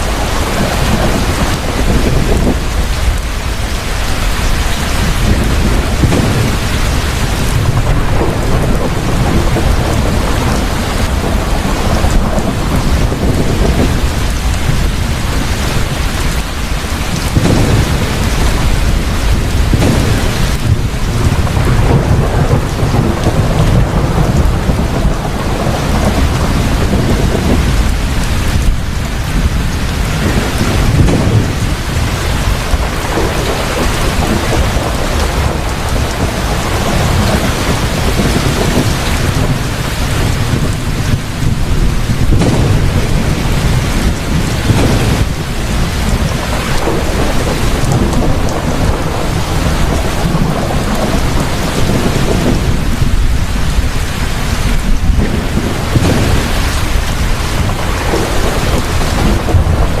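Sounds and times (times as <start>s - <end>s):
heavy rain pouring: 0.0s - 60.0s
low thunder rumbling: 0.0s - 60.0s.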